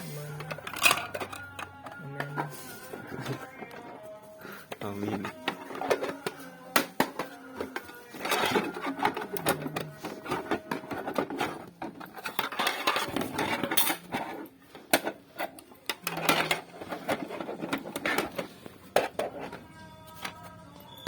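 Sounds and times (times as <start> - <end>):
parcel rustling and scraping: 0.0 - 20.6.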